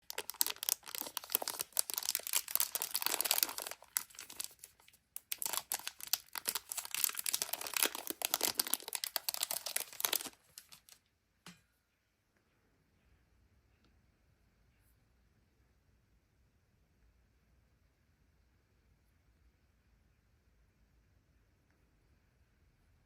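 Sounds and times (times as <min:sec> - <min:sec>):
wrapper crinkling and tearing: 0:00.0 - 0:11.0.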